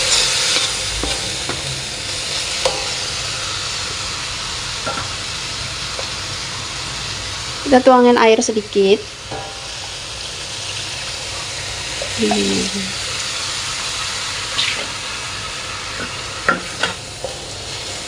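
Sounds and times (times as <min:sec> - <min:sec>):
sauce sizzling in a hot pan: 0:00.0 - 0:18.0
utensil tapping on pan: 0:02.6 - 0:03.0, 0:09.3 - 0:09.8, 0:12.0 - 0:12.8.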